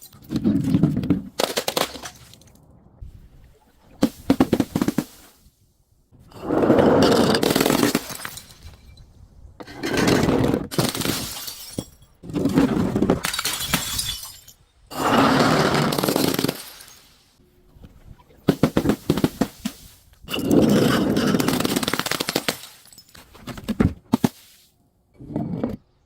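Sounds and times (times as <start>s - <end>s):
glass breaking and crunching: 7.3s - 9.0s, 10.7s - 12.5s, 13.2s - 14.6s, 15.8s - 17.2s, 20.3s - 23.4s
sharp cracks: 21.4s - 22.9s.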